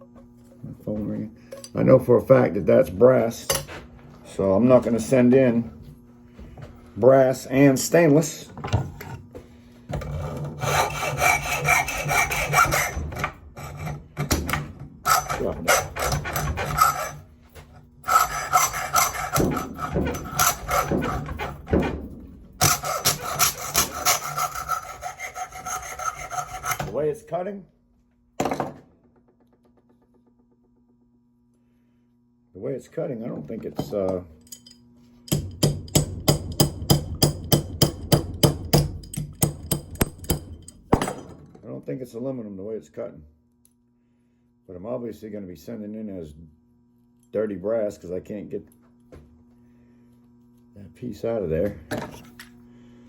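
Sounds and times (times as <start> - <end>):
hand saw rasping through metal: 10.0 - 17.3, 18.0 - 22.0, 22.6 - 27.0.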